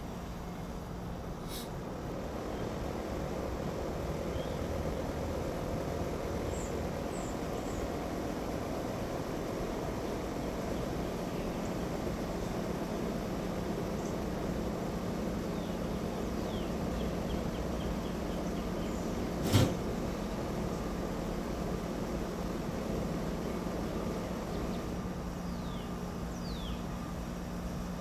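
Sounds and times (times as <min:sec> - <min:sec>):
birds singing: 0:04.1 - 0:05.1, 0:06.3 - 0:08.8, 0:10.3 - 0:19.4, 0:23.2 - 0:27.3.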